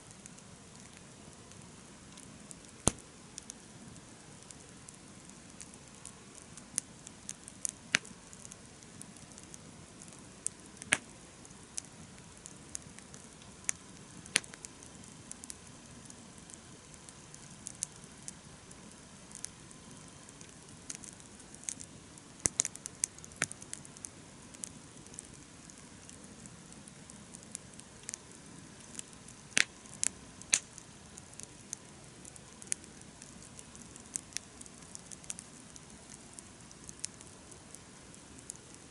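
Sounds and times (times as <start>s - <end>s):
campfire crackling and popping: 0.0s - 38.9s
low noise of burning fire: 0.0s - 38.9s.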